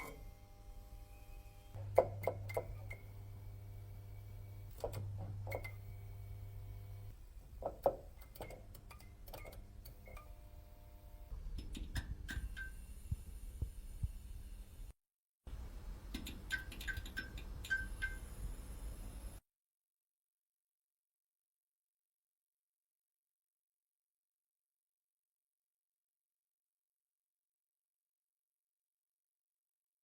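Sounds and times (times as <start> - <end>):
neon tube buzzing hum: 0.0 - 14.9.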